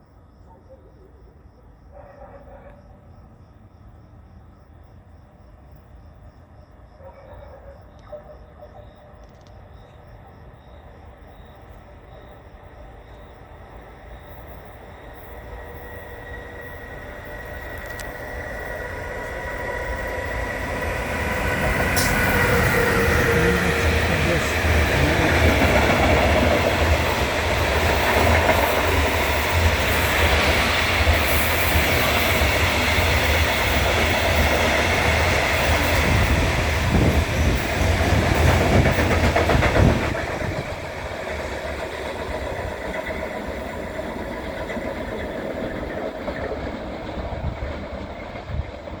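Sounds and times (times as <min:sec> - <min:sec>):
freight train rumbling past: 0:11.2 - 0:49.0.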